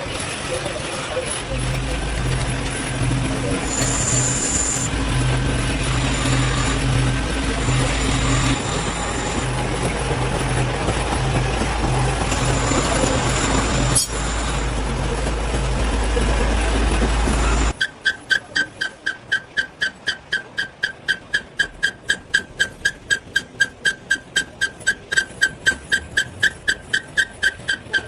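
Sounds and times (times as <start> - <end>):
loud machinery drone: 0.0 - 18.5
short high pulsing tones: 1.6 - 15.0.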